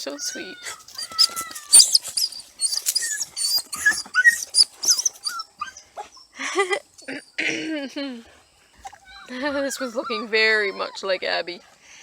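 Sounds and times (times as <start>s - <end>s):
puppies squeaking and whimpering: 0.0s - 6.3s, 8.8s - 11.4s.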